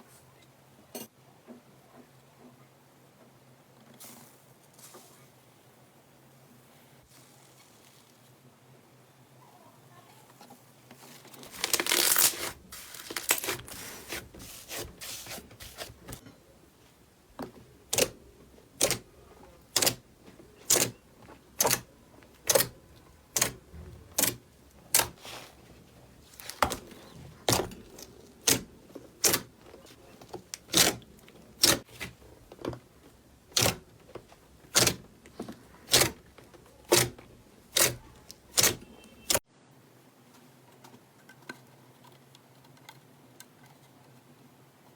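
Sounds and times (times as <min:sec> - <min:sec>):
slime crackling: 0:11.3 - 0:15.9.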